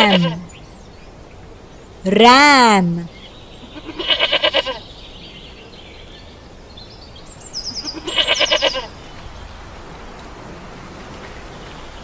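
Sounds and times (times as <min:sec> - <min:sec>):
ram bleating: 0:00.0 - 0:00.5, 0:03.7 - 0:04.8, 0:07.8 - 0:08.9.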